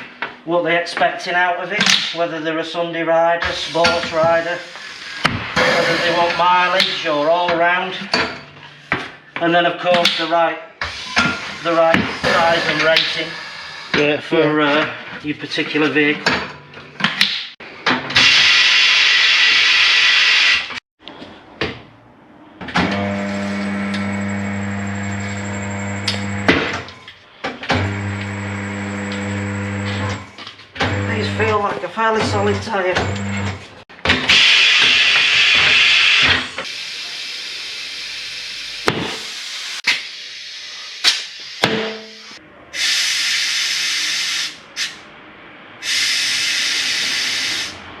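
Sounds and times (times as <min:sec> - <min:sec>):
steady machine hum: 0:23.0 - 0:26.5, 0:27.8 - 0:30.1, 0:30.9 - 0:31.4
compressed air hissing: 0:39.1 - 0:45.0, 0:45.8 - 0:47.8
compressed air blast hissing: 0:45.8 - 0:47.8.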